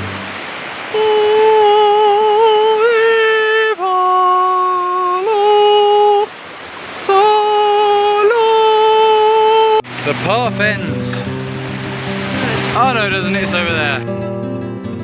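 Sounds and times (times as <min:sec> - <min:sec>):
person humming slow melody: 0:00.0 - 0:06.3.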